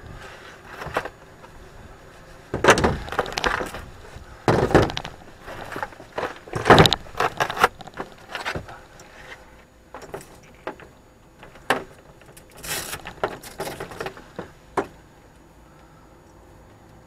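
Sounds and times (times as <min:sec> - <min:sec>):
hard objects knocking and rattling: 0:02.5 - 0:08.8.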